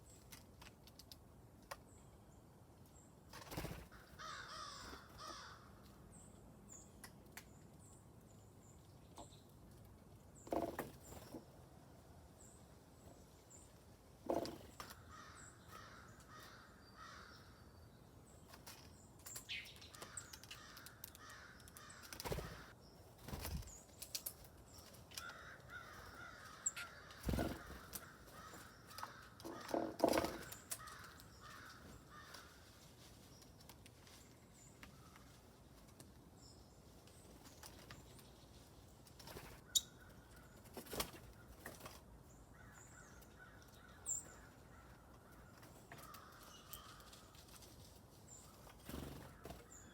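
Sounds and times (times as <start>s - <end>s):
harsh caw-like bird calls: 3.7s - 5.9s, 14.8s - 17.7s, 19.9s - 22.8s, 25.1s - 32.7s, 42.5s - 47.3s, 48.9s - 49.9s.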